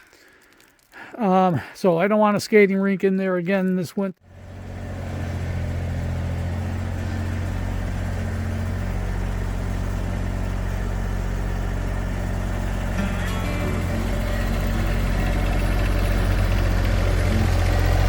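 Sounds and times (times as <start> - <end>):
tractor diesel engine running: 4.2 - 18.0.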